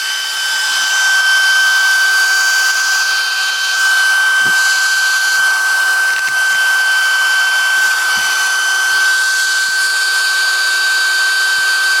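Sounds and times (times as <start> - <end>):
router spindle whining: 0.0 - 12.0
cutting hiss: 2.4 - 9.8.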